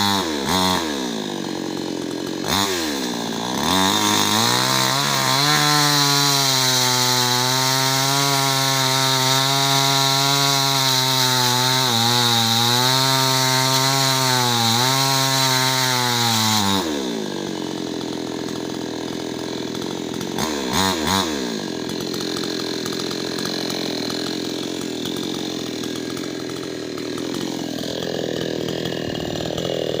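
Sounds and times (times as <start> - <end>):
chainsaw cutting wood: 0.0 - 30.0.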